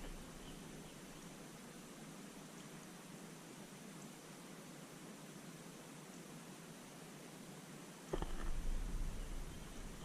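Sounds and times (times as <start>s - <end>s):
faint steady hiss: 0.0s - 10.0s.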